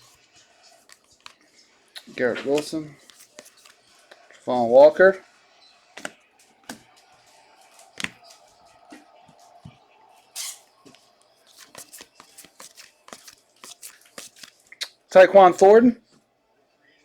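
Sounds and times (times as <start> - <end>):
trading cards clicking and sliding: 0.0 - 4.4, 6.0 - 8.5, 10.4 - 14.9.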